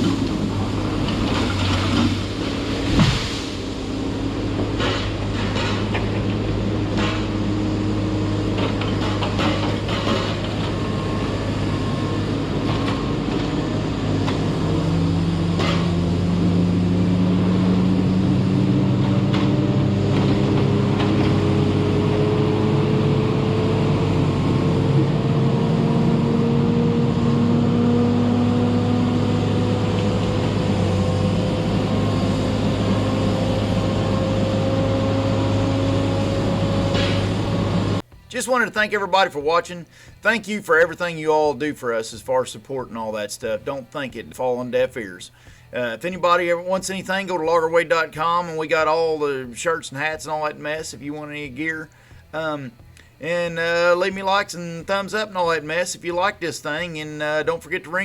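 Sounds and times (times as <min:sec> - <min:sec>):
disc saw engine drone: 0:00.0 - 0:38.3.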